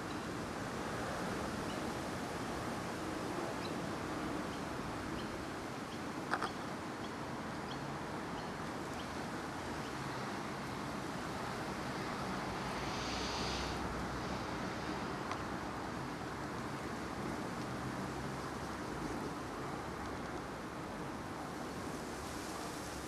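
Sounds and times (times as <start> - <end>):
wind hiss: 8.1 - 23.0
burst of higher hiss: 12.6 - 14.3.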